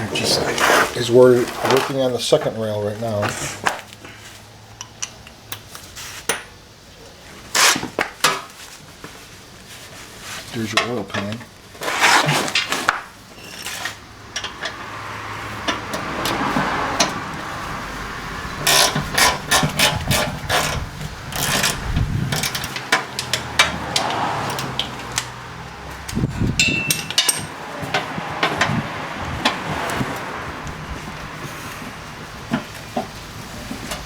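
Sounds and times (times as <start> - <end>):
metallic clanks and scraping: 10.7 - 17.6, 18.6 - 34.0.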